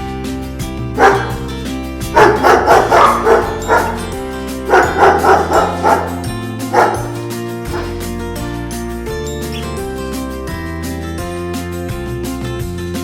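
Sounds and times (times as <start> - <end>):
guitar music: 0.7 - 11.7
dog barking: 1.0 - 1.5, 2.1 - 8.1.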